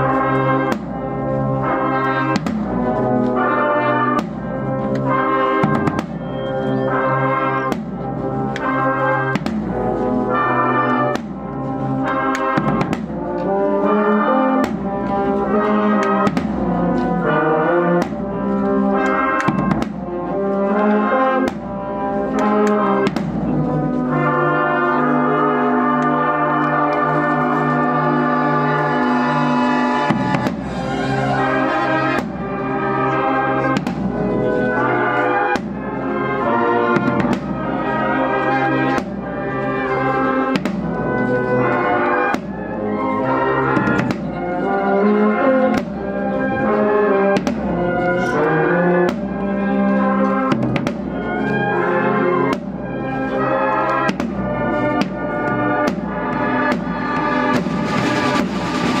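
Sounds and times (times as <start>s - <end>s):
brass chords: 0.0s - 59.0s
drum strikes: 2.4s - 2.8s, 5.6s - 6.3s, 9.3s - 9.8s, 11.1s - 11.4s, 12.4s - 13.2s, 16.2s - 16.9s, 19.4s - 20.2s, 23.0s - 23.6s, 29.5s - 31.2s, 33.8s - 34.2s, 37.0s - 37.6s, 40.5s - 40.9s, 55.8s - 59.0s.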